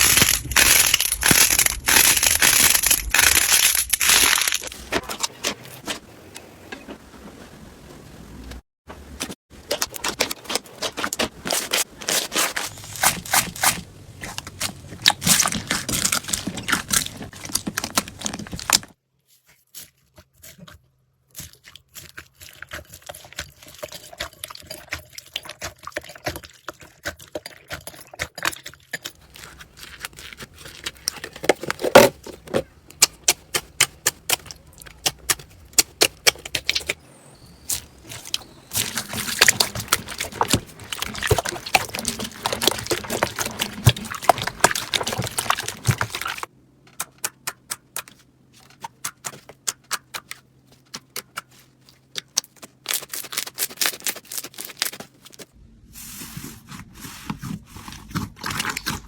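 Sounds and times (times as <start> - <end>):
slime crackling and popping: 0.0 - 4.7, 51.2 - 55.0.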